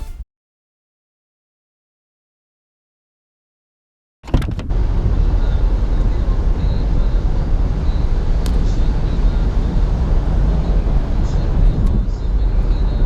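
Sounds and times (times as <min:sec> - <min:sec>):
low rumbling background noise: 0:04.7 - 0:13.0.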